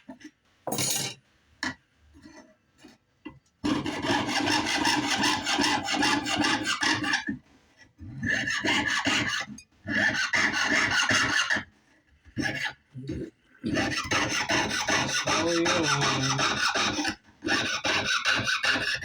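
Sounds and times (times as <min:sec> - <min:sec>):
saw rasping through sheet metal: 0:03.6 - 0:07.3, 0:08.2 - 0:11.7, 0:13.7 - 0:19.0.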